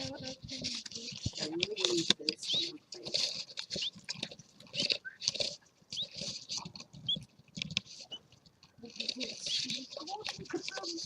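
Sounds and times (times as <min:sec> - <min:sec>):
baby birds chirping: 0:00.0 - 0:11.0.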